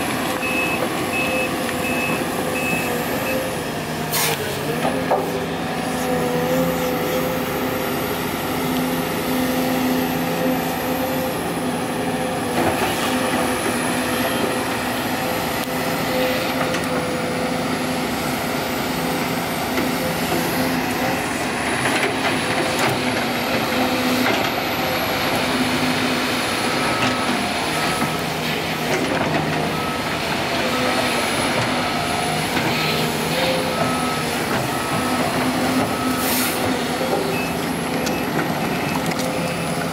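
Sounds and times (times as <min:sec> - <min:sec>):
heavy diesel engines running: 0:00.0 - 0:39.9
reversing alarm beeping: 0:00.4 - 0:04.4, 0:24.5 - 0:39.9.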